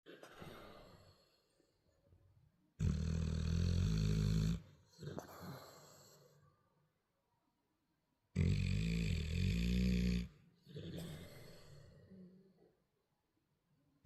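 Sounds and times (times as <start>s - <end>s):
dog snoring: 2.8s - 6.4s, 8.3s - 12.3s.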